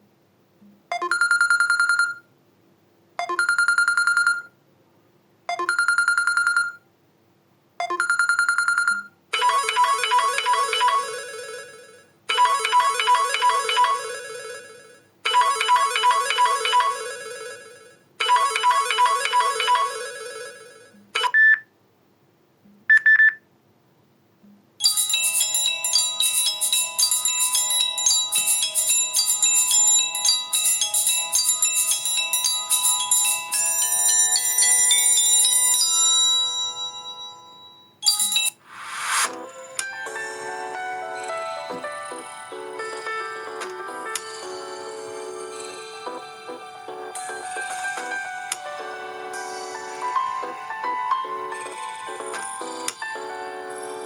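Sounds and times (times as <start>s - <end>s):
melodic ringtone: 0.9s - 2.2s, 3.2s - 4.5s, 5.5s - 6.8s, 7.8s - 21.4s, 24.8s - 54.0s
bell-like tune: 24.8s - 38.6s.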